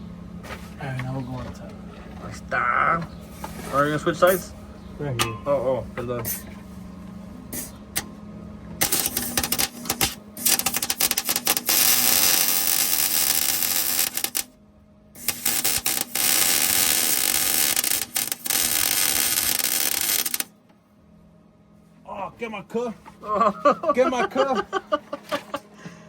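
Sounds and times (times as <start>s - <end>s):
welder crackling: 8.8s - 14.5s, 15.2s - 20.5s.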